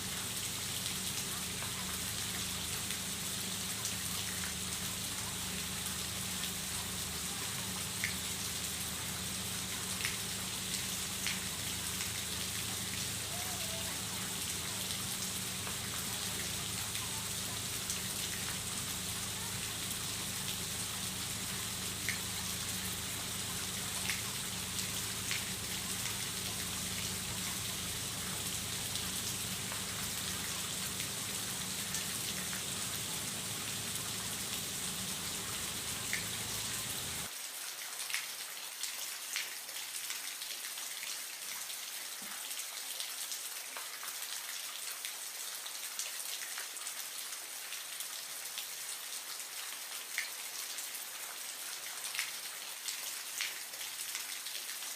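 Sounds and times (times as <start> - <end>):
filter pump hum: 0.0 - 37.3
small water drips: 0.0 - 37.3
water trickling and pattering: 0.0 - 37.3.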